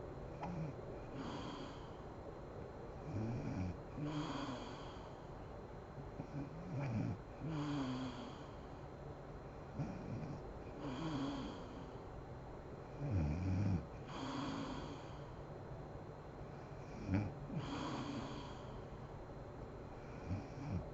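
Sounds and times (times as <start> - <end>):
woman snoring: 0.4 - 2.0, 3.0 - 5.1, 6.2 - 8.6, 9.8 - 12.0, 13.0 - 15.3, 16.8 - 18.8, 20.1 - 20.9.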